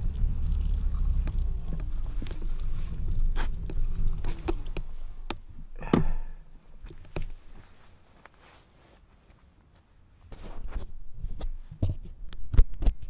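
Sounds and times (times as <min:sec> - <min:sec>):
wind rumble on microphone: 0:00.0 - 0:06.1.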